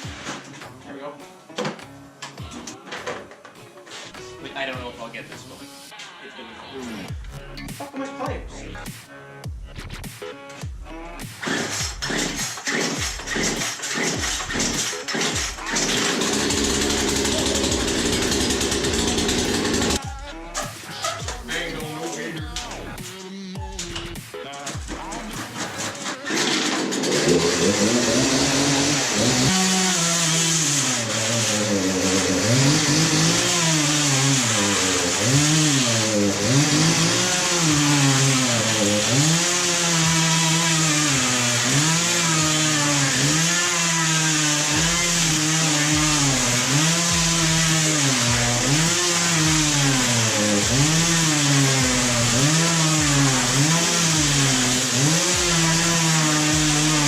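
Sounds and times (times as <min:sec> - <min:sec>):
chainsaw bogging under load: 0:11.4 - 0:20.0, 0:25.5 - 0:57.0.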